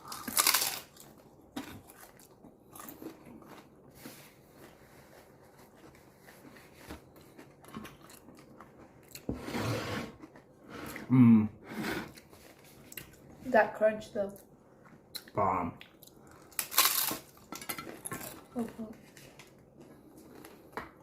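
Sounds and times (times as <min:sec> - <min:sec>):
crunchy food chewing: 0:00.0 - 0:09.3, 0:15.1 - 0:20.8.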